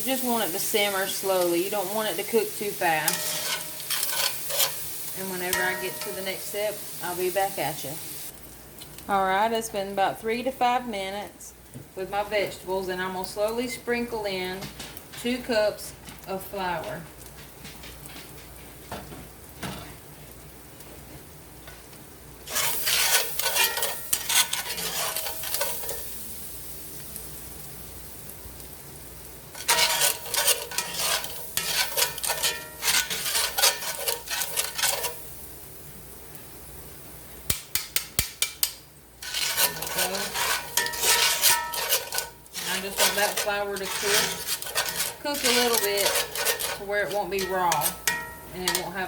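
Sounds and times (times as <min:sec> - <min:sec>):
utensil scraping in a cast iron pan: 0:00.0 - 0:07.6, 0:22.4 - 0:26.2, 0:29.5 - 0:35.4, 0:38.2 - 0:49.0
pan sizzling: 0:00.0 - 0:11.4, 0:12.0 - 0:49.0.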